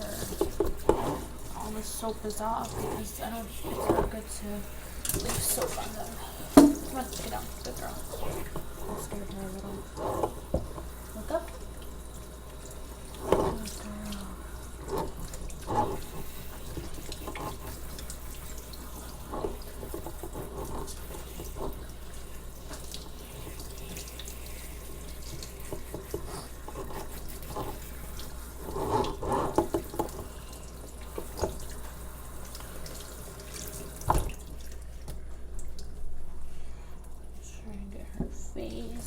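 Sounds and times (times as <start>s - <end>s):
tap water running: 0.0s - 39.0s
splashes and knocks: 5.0s - 9.5s.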